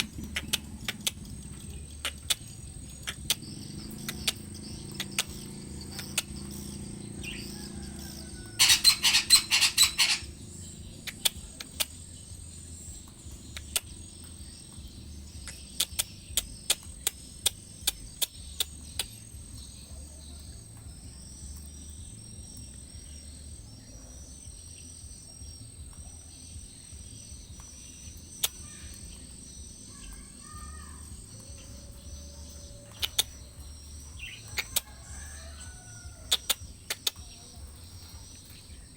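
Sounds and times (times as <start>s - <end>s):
sharp clicks: 0.0s - 6.8s, 11.0s - 19.3s, 27.6s - 30.3s, 31.3s - 34.9s, 36.3s - 37.4s
parakeet harsh chattering calls: 0.0s - 14.0s, 27.6s - 38.8s
high insect tone: 0.0s - 38.9s.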